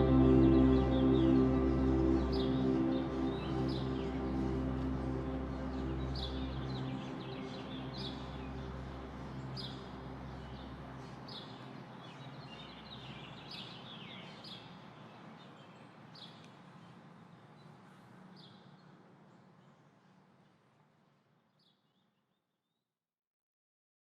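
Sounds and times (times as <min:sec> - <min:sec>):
low held music notes: 0:00.0 - 0:11.9.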